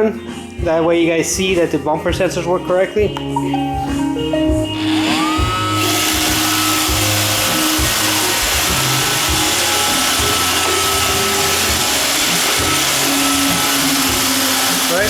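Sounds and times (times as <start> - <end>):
robot vacuum motor whine: 4.7 - 15.0.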